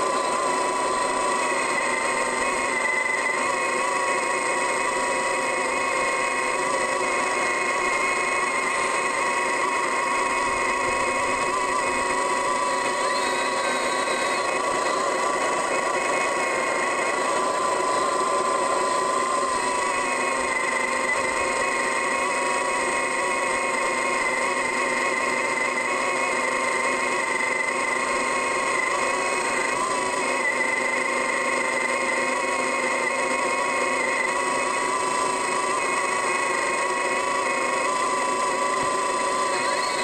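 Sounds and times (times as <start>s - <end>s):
diesel engine and hydraulics running: 0.0s - 40.0s
whining tone: 0.0s - 40.0s.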